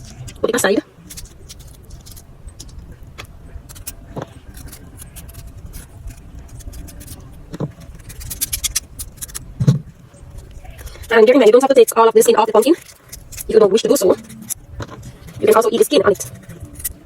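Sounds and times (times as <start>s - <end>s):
steady low hum: 0.0s - 17.0s
knife scraping and tapping pumpkin: 3.6s - 11.1s
dull thuds: 9.4s - 10.0s.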